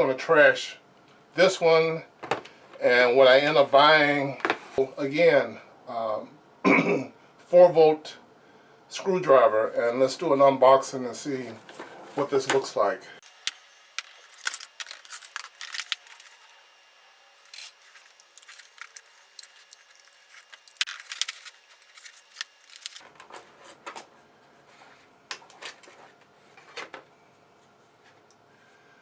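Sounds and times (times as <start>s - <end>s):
packaging crackling and rustling: 13.2s - 23.4s.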